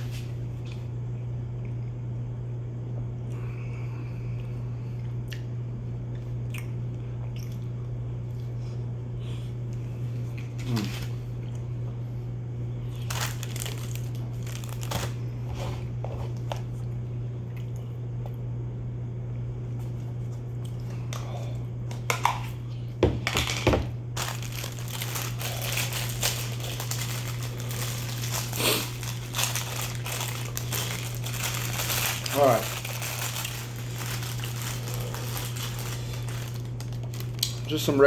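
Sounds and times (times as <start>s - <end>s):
steady low hum: 0.0s - 38.0s
plastic packaging crinkling: 12.8s - 15.3s, 23.2s - 38.0s.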